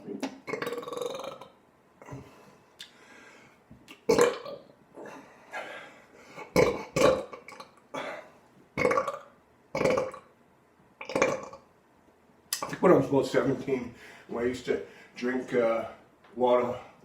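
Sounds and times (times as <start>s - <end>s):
man burping: 0.2s - 2.2s, 4.0s - 5.7s, 6.4s - 10.3s, 11.0s - 11.6s.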